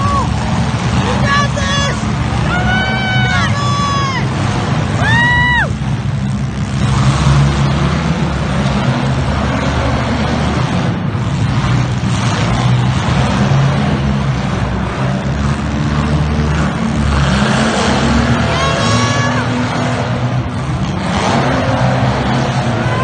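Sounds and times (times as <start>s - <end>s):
several car engines running hard: 0.0s - 23.0s.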